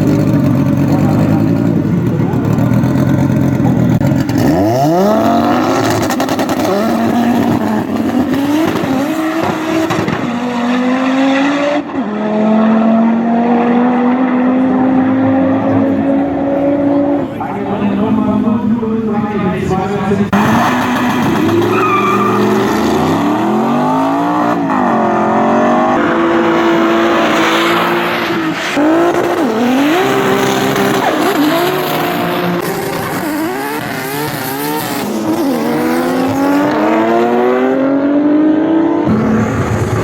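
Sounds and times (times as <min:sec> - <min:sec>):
race car engine revving: 0:00.0 - 0:40.0
tyre squeal: 0:21.0 - 0:22.7.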